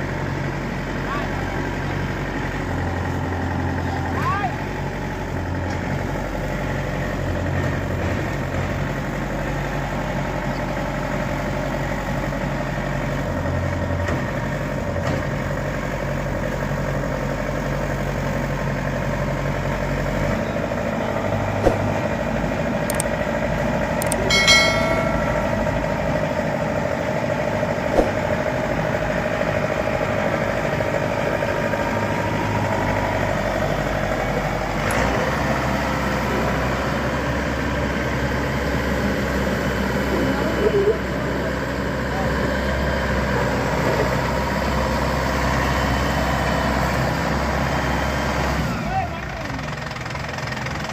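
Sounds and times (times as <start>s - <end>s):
farm machinery engine running: 0.0s - 50.9s
sharp clicks: 22.9s - 23.1s, 24.0s - 24.3s.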